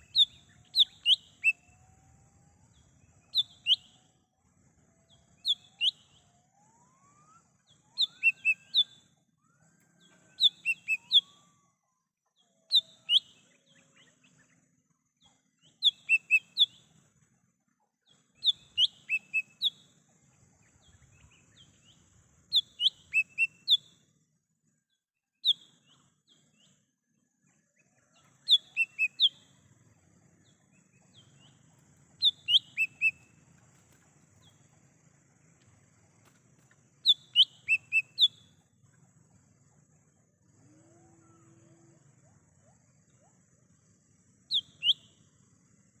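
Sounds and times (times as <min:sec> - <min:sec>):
faint rising whistles: 0:00.0 - 0:14.6, 0:37.0 - 0:38.6, 0:39.2 - 0:45.4.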